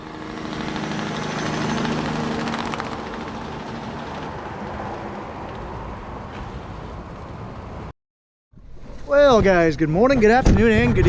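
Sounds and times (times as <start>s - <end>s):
vehicle engine running: 0.0s - 4.7s.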